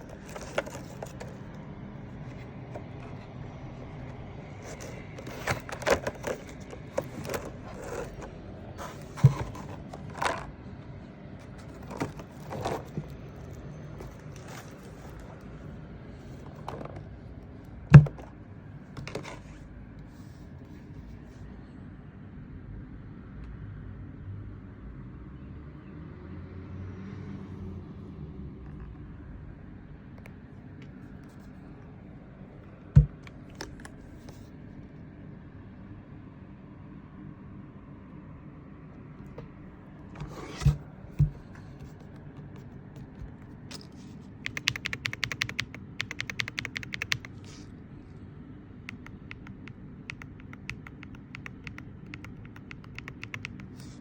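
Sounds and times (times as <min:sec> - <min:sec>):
box thud: 0:09.1 - 0:09.7, 0:17.9 - 0:18.2, 0:33.0 - 0:33.2
steady low hum: 0:28.9 - 0:54.0.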